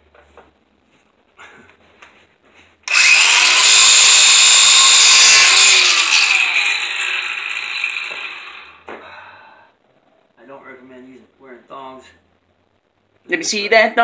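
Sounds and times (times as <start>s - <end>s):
power tool whining: 2.9s - 8.9s.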